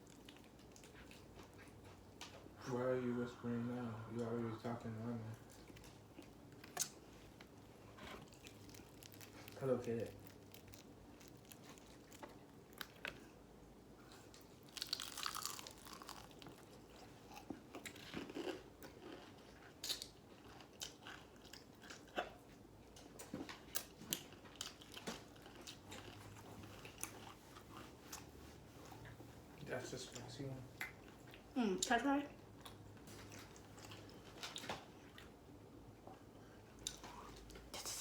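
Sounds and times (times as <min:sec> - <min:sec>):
crunching fried chicken: 0:08.2 - 0:13.3, 0:14.2 - 0:22.2.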